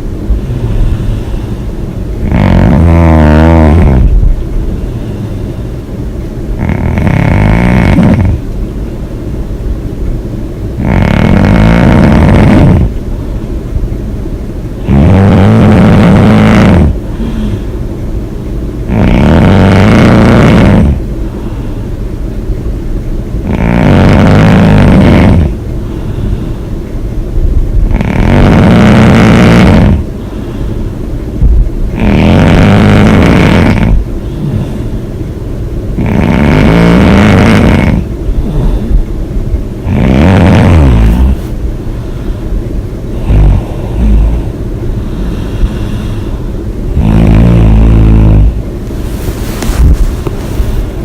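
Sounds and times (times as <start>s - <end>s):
woman snoring loudly: 2.2s - 4.2s, 6.6s - 8.4s, 10.8s - 12.9s, 14.8s - 17.5s, 18.9s - 21.0s, 23.4s - 25.6s, 27.9s - 30.0s, 31.9s - 34.6s, 36.0s - 38.8s, 39.8s - 41.5s, 43.2s - 44.5s, 47.0s - 48.6s.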